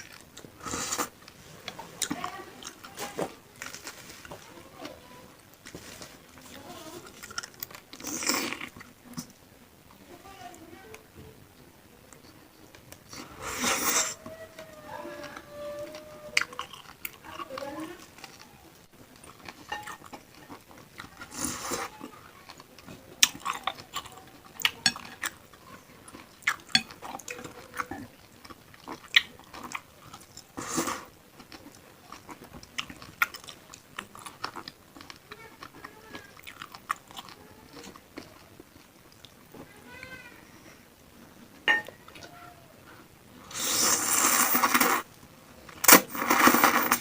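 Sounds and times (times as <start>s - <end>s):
cutlery clinking against bowl: 19.7s - 20.1s, 41.7s - 42.0s.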